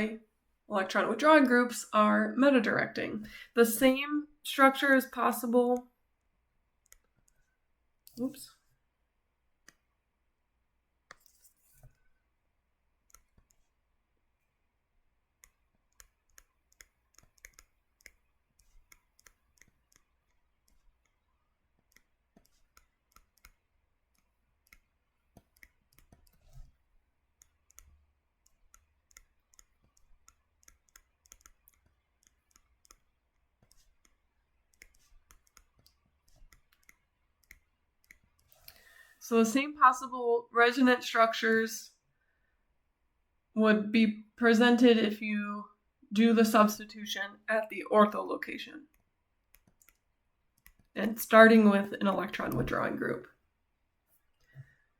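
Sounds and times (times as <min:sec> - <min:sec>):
faint irregular clicks and taps: 0:05.7 - 0:08.8, 0:09.6 - 0:10.0, 0:11.0 - 0:12.2, 0:13.0 - 0:14.6, 0:15.3 - 0:39.0, 0:48.8 - 0:51.0, 0:54.1 - 0:54.9.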